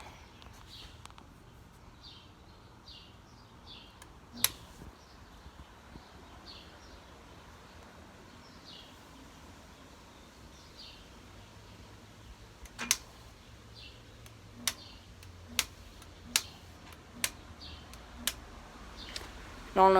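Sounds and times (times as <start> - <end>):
bird chirping: 0.0 - 19.9
faint background hum: 0.0 - 19.9
sharp click: 4.0 - 4.9, 12.6 - 13.4, 14.2 - 19.3.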